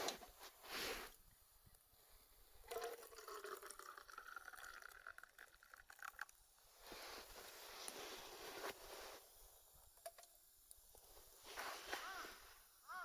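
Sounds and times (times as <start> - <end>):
liquid pouring into cup: 2.7 - 6.4.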